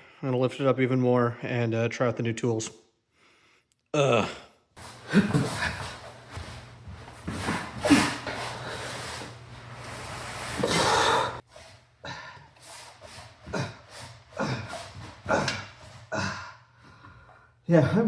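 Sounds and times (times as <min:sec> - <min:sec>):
man grunting with effort: 0:04.0 - 0:04.5
man breathing hard: 0:04.8 - 0:11.4.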